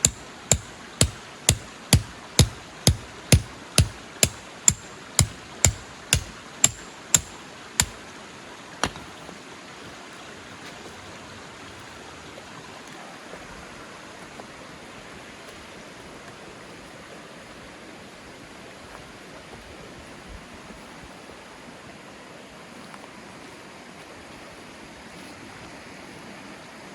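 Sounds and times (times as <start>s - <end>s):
metal tent peg hammered: 0.0s - 8.0s.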